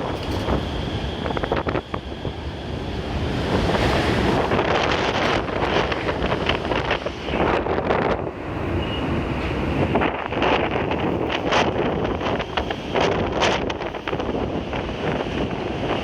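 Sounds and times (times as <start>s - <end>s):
strong wind buffeting microphone: 0.0s - 16.0s.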